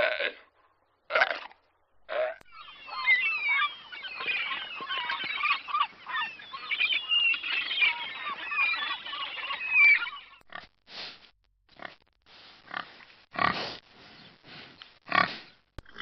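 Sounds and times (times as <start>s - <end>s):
seagulls calling: 2.4s - 10.4s.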